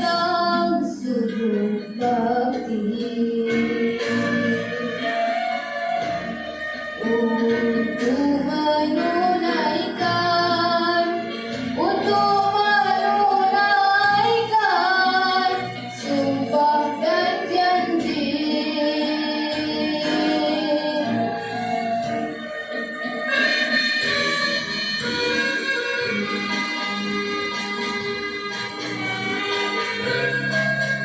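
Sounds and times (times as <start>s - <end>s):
boy singing: 0.0s - 4.6s, 7.0s - 11.2s, 11.8s - 21.3s
backing music: 0.0s - 31.0s.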